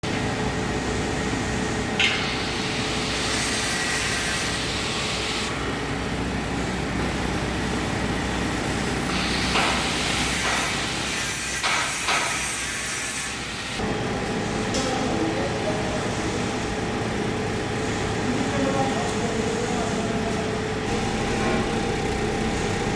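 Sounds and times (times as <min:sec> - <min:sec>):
machine running with faint hum: 0:13.8 - 0:22.9.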